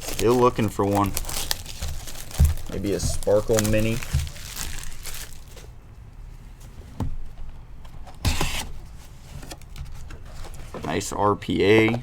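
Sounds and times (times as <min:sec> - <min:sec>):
trading cards rustling and sliding: 0:00.0 - 0:05.7.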